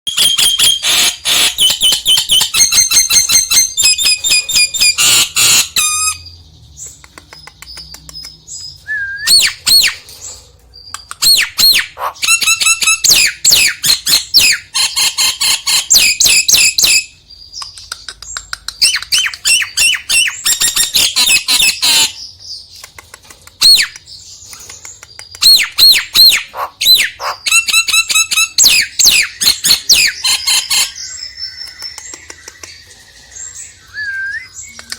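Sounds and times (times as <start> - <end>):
myna whistles and squawks: 25.4 - 33.0.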